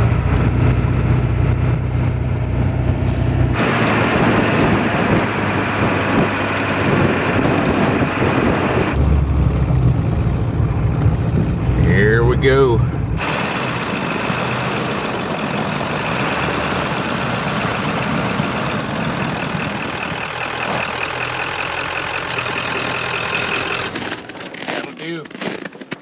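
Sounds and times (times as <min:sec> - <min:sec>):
diesel truck engine: 0:00.0 - 0:24.4
tyre noise: 0:09.0 - 0:13.2.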